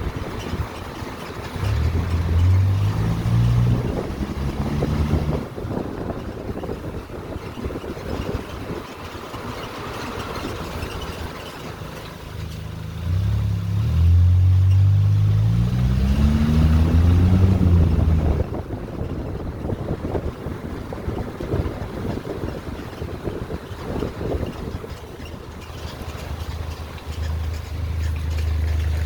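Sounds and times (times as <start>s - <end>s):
road noise rumbling: 0.0s - 29.0s
loud low drone: 13.0s - 18.8s.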